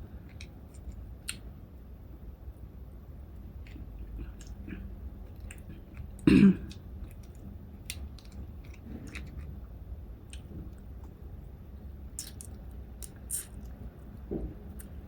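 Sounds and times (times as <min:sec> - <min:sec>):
chewing: 0:03.6 - 0:09.6
person clearing throat: 0:06.2 - 0:06.7.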